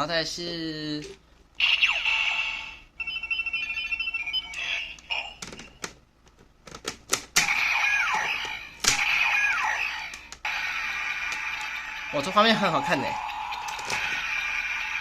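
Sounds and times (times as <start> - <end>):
toy electronic sweeping sound: 10.5 - 15.0.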